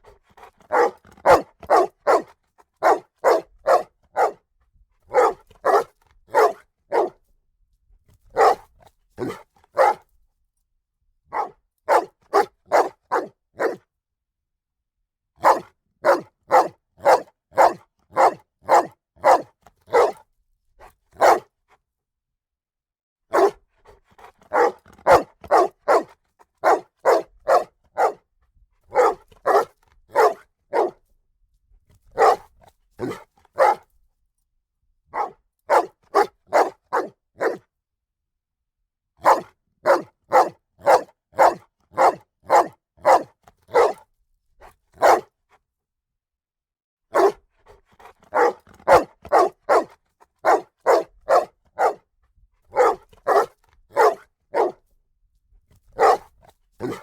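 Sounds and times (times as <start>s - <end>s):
dog barking: 0.0s - 4.4s, 5.1s - 7.2s, 8.3s - 10.1s, 11.3s - 13.8s, 15.4s - 20.2s, 21.2s - 21.5s, 23.3s - 28.3s, 28.9s - 31.0s, 32.1s - 33.9s, 35.1s - 37.6s, 39.2s - 44.0s, 45.0s - 45.4s, 47.1s - 52.1s, 52.7s - 54.8s, 55.9s - 57.0s.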